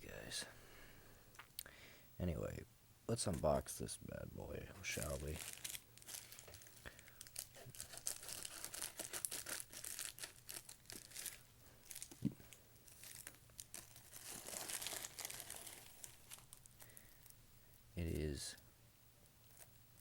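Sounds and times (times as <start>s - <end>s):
packaging crinkling and tearing: 4.8s - 17.4s.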